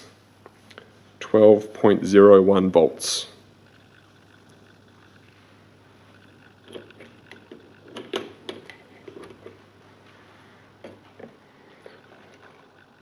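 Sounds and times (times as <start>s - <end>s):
steady low hum: 0.0s - 13.0s
test probes clicking and knocking: 3.6s - 5.4s, 6.1s - 9.7s, 10.8s - 13.0s.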